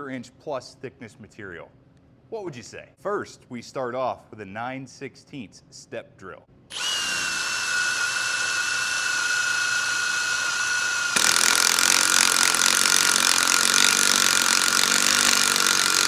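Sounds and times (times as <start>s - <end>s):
power drill whining into steel: 6.7s - 16.0s.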